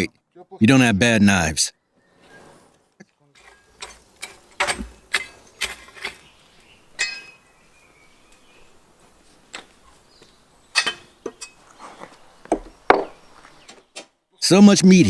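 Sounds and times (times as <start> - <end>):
metallic clink: 7.0 - 7.4.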